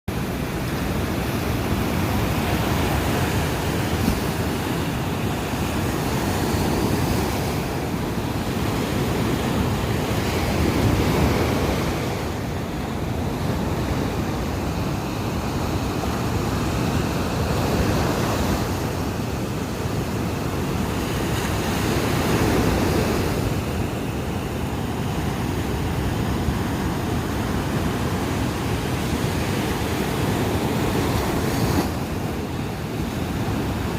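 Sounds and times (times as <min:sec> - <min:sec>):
sea waves breaking on beach: 0:00.1 - 0:33.9.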